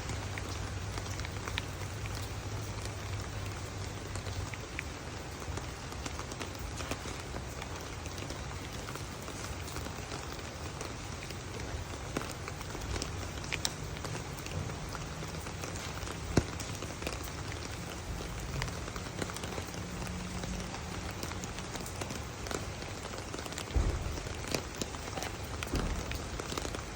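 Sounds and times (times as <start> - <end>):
steady rain falling: 0.0 - 26.9
drops ticking on a surface: 11.2 - 26.9.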